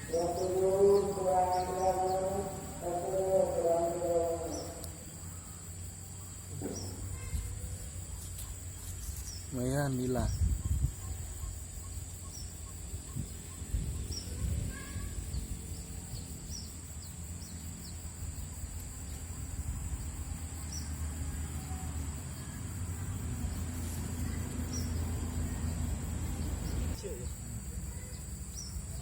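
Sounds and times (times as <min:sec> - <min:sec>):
high-pitched insect drone: 0:00.0 - 0:29.0
low wind rumble: 0:06.8 - 0:27.0.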